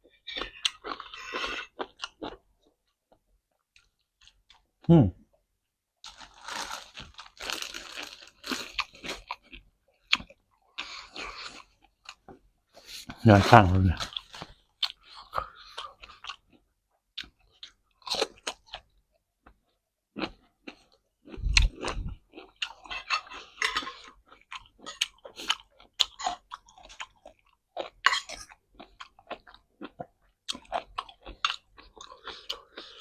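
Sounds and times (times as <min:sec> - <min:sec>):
chewing crisp raw vegetables: 0:20.2 - 0:33.0.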